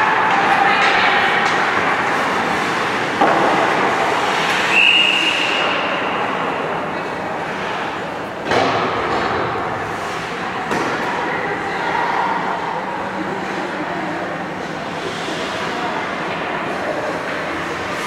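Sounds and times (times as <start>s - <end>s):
hockey stick and puck clacks: 0.1s - 5.9s, 8.4s - 11.2s
high whistle: 4.6s - 6.0s.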